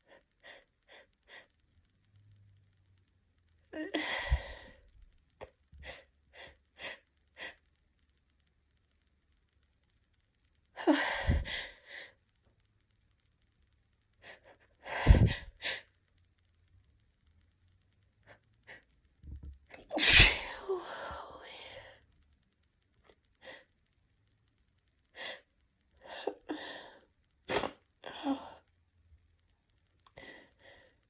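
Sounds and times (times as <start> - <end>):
short sniffs: 20.0 - 20.5
woman sneezing: 20.0 - 20.7, 27.5 - 27.8.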